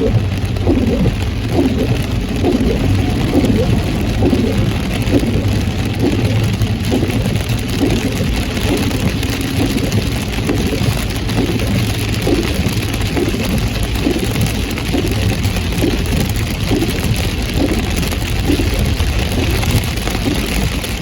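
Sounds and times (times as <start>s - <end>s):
car engine and road hum: 0.0s - 21.0s
rain hissing on car: 0.0s - 21.0s.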